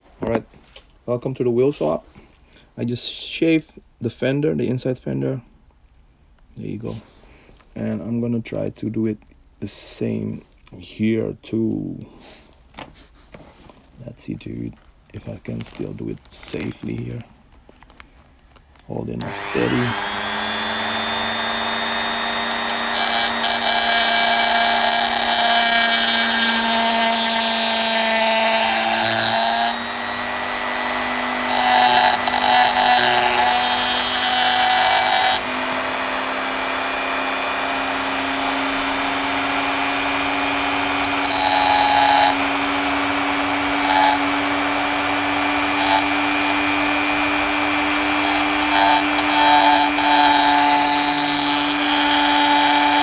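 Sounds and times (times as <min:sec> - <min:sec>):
harsh grinding on metal: 0:19.2 - 0:53.0
high-speed rotary tool running: 0:19.2 - 0:53.0.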